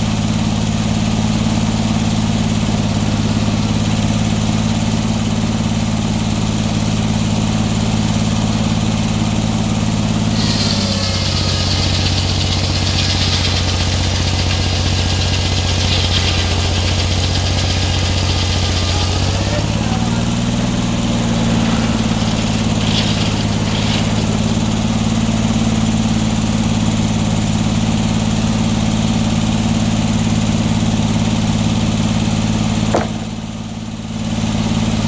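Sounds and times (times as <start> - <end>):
sawmill engine running: 0.0 - 35.0
saw blade cutting wood: 10.3 - 25.8, 32.9 - 33.4.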